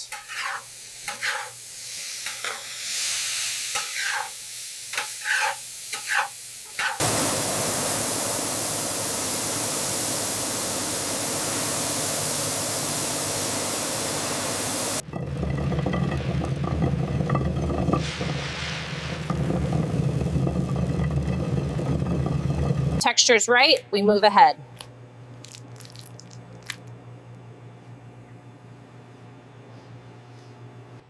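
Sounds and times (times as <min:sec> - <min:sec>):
steady even hiss: 0:00.6 - 0:15.0, 0:18.0 - 0:20.3
stirring corn in a pot: 0:15.0 - 0:23.0.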